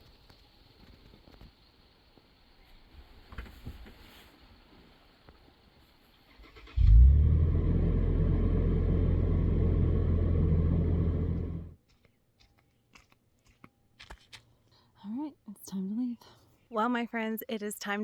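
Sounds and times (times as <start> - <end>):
car engine starting and running: 6.3 - 11.8.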